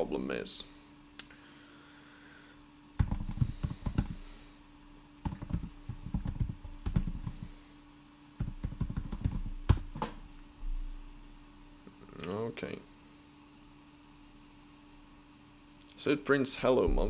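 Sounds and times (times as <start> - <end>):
typing on keyboard: 3.0 - 4.2, 5.3 - 7.4, 8.4 - 9.9.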